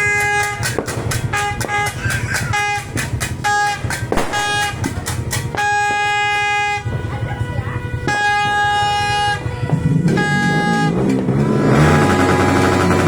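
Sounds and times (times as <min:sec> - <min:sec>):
sharp cracks: 0:00.0 - 0:07.0
horn beeping: 0:00.0 - 0:13.0
motorcycle engine running: 0:00.0 - 0:13.0.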